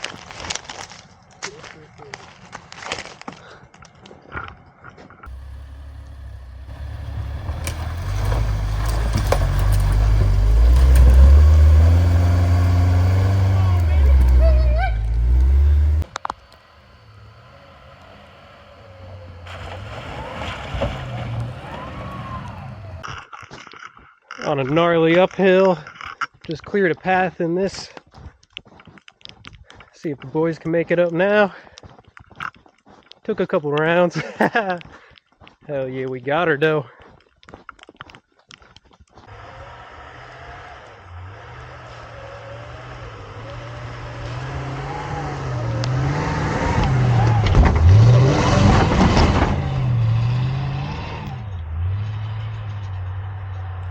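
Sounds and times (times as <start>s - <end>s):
truck engine revving: 5.3s - 23.0s, 39.3s - 53.9s.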